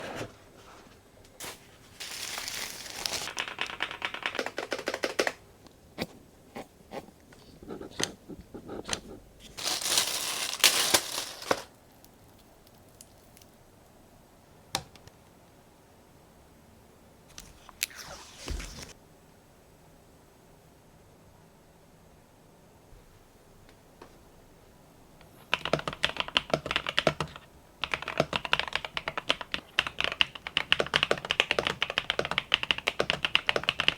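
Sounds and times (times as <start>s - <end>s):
packaging tearing and crinkling: 1.4s - 3.6s, 9.5s - 11.8s.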